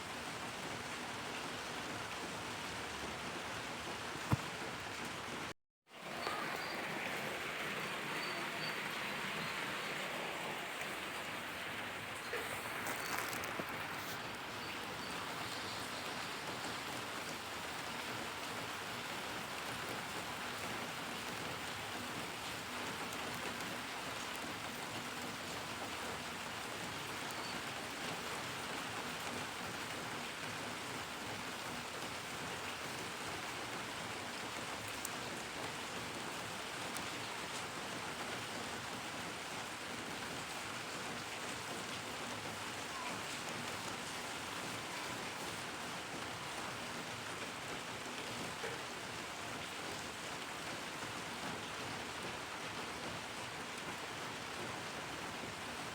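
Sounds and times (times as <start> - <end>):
steady rainfall: 0.0 - 55.9
raindrop ticks: 34.4 - 37.8.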